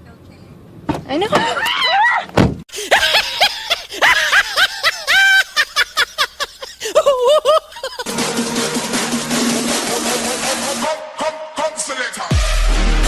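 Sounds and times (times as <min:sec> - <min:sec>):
high-pitched voice giggling: 0:02.8 - 0:08.1.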